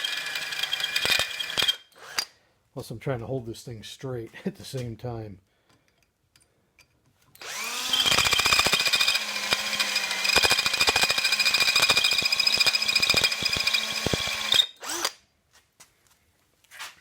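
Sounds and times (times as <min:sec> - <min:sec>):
electric drill drilling into metal: 0:00.0 - 0:02.3, 0:07.4 - 0:15.2.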